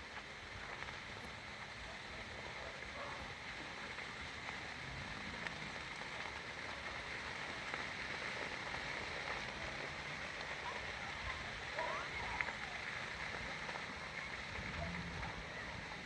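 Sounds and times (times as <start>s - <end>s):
fire crackling: 0.0s - 16.0s.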